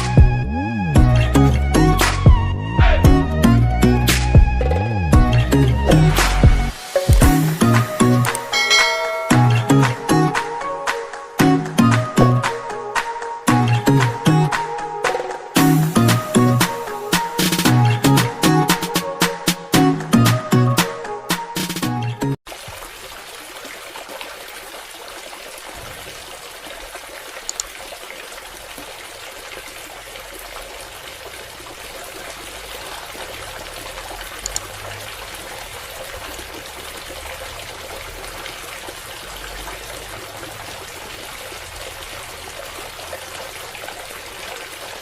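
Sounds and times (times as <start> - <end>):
water trickling and pouring: 4.7 - 10.3, 22.5 - 45.0.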